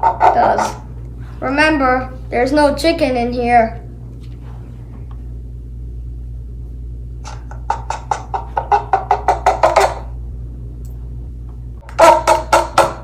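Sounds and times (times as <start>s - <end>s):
low hum: 0.0s - 13.0s
squawking clucks from cup noisemaker: 7.4s - 10.0s.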